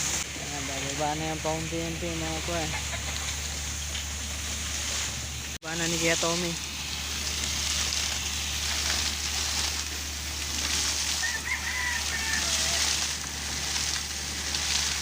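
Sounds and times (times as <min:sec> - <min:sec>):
air compressor humming: 0:00.0 - 0:15.0
water and air gushing from well: 0:00.0 - 0:15.0
rooster crowing: 0:10.9 - 0:13.2.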